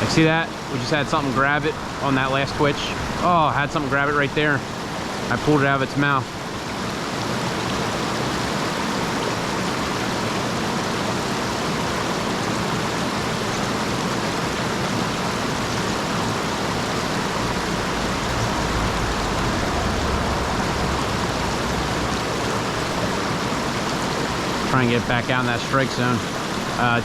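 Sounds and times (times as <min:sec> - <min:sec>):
stream water flowing: 0:00.0 - 0:27.0
deep low rumble: 0:18.0 - 0:23.0.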